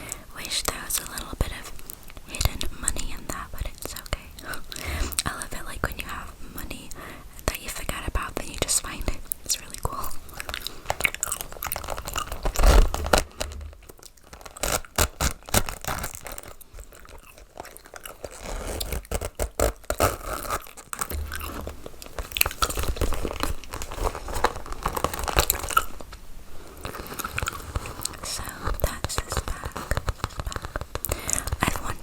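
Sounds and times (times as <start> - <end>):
tapping and scratching on bag: 10.4 - 26.0, 26.8 - 32.0
heavier knock: 21.1 - 21.6.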